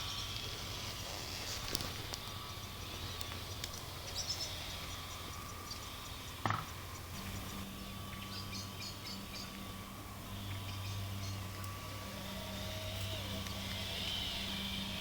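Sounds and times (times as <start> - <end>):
electric motor hum and whine: 0.0 - 15.0
lower motor tone: 0.0 - 15.0
knock: 6.5 - 6.7.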